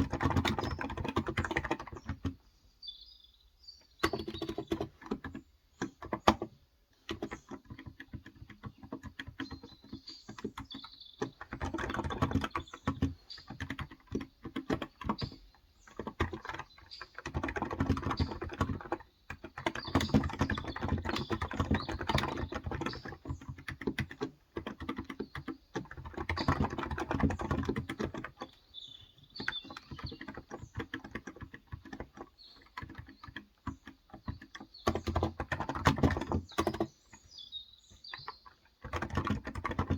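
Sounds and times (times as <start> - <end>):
muted keyboard typing: 0.0 - 2.4, 3.9 - 39.9.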